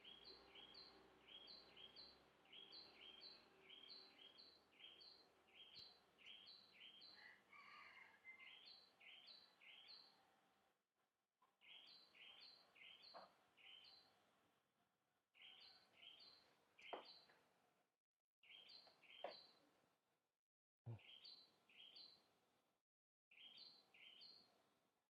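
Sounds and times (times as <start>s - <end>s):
bird chirping: 0.0s - 7.3s, 8.3s - 10.2s, 11.6s - 14.1s, 15.4s - 17.4s, 18.4s - 19.6s, 20.9s - 22.2s, 23.3s - 24.5s.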